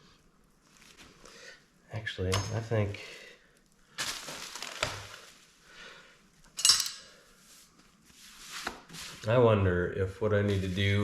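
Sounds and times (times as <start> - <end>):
metal tools clinking and scraping: 2.3 - 2.8, 6.5 - 7.2.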